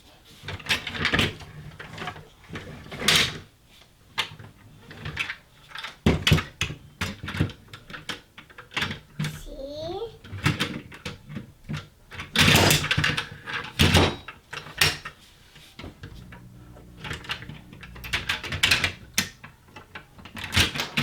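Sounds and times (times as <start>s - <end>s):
metal toy cars clattering: 11.7s - 15.2s.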